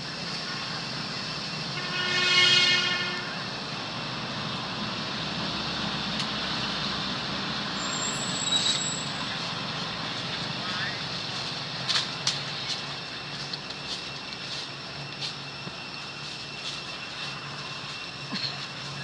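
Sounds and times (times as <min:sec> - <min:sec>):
outdoor background noise: 0:00.0 - 0:19.0
vehicle horn: 0:01.7 - 0:03.5.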